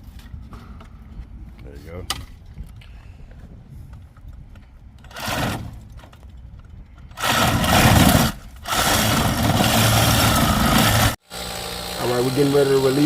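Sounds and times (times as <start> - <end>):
small motor running: 8.7 - 13.0.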